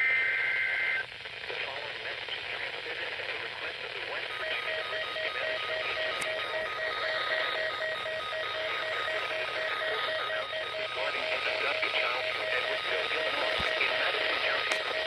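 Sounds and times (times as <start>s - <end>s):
radio static hiss: 0.0s - 15.0s.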